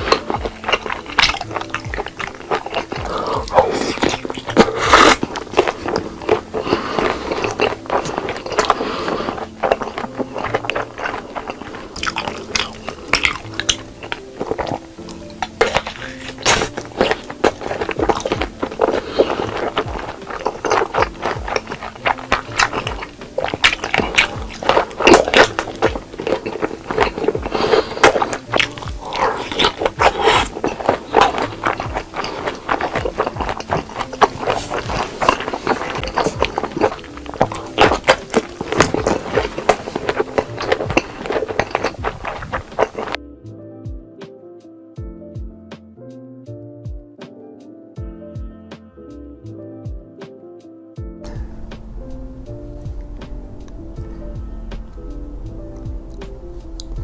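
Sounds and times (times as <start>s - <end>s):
crunching and chewing food: 0.0s - 43.2s, 55.8s - 57.0s
background music: 0.0s - 57.0s.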